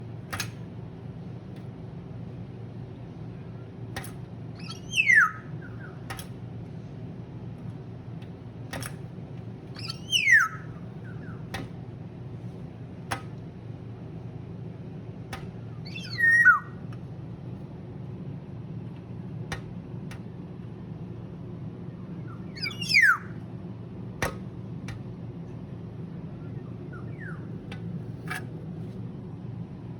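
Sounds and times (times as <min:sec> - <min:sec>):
bird falling whistle call: 0:04.6 - 0:05.8, 0:09.8 - 0:11.4, 0:15.8 - 0:16.8, 0:22.5 - 0:23.3.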